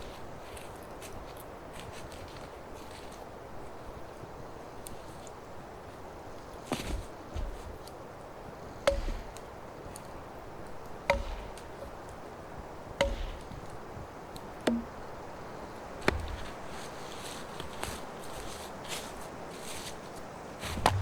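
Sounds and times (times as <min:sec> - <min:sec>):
axe chopping wood: 0:06.8 - 0:07.7, 0:08.8 - 0:10.0, 0:11.1 - 0:12.1, 0:13.0 - 0:15.1, 0:16.0 - 0:16.5, 0:20.8 - 0:21.0.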